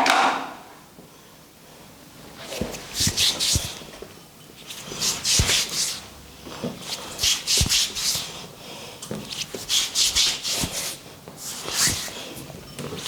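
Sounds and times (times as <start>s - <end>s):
hands rubbing hair: 2.5s - 3.8s, 4.7s - 6.0s, 6.8s - 8.4s, 9.3s - 12.3s.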